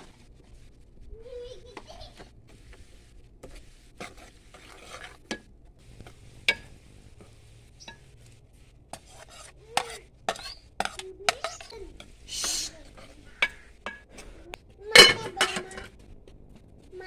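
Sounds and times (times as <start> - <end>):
metal spoon scraping a pot: 3.4 - 16.0.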